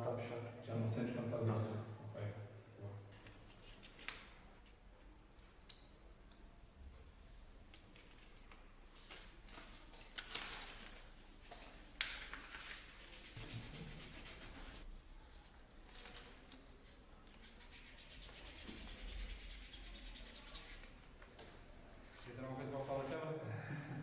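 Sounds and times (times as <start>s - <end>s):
faint rubbing and rustling: 3.1s - 4.8s, 7.3s - 23.2s.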